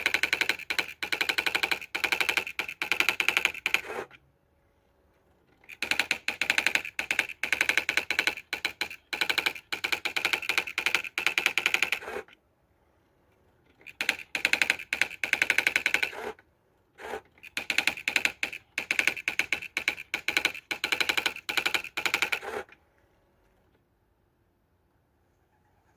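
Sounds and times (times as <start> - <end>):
typewriter daisy wheel clicking: 0.0 - 4.0, 5.6 - 12.3, 13.8 - 16.4, 17.4 - 22.7.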